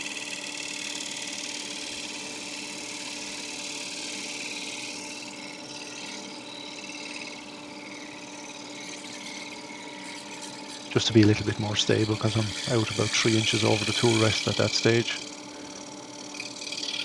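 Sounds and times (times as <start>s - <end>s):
lathe motor hum: 0.5s - 17.0s
gouge cutting wood hiss: 8.3s - 17.0s.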